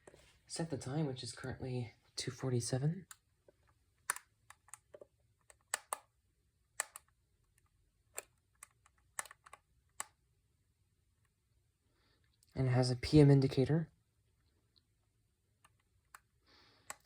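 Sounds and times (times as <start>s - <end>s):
plastic alarm clock buttons clicking: 4.1s - 6.1s, 6.8s - 7.1s, 8.1s - 10.1s.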